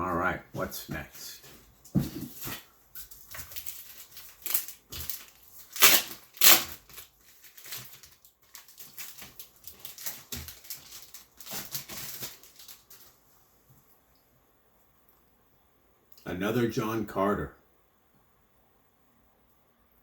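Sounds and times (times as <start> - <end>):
packing material crinkling: 2.2 - 13.2.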